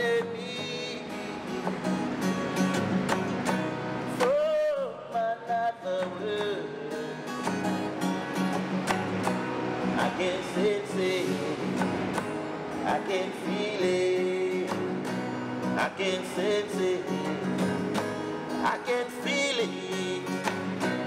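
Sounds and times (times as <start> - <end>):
man singing: 0.0 - 1.8, 4.1 - 7.4, 9.8 - 12.1, 12.8 - 21.0
strummed accompaniment: 0.0 - 21.0.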